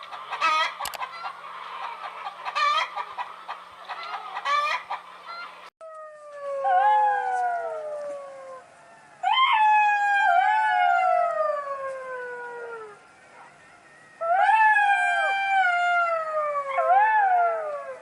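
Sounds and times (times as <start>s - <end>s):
dog howling: 14.2s - 18.0s.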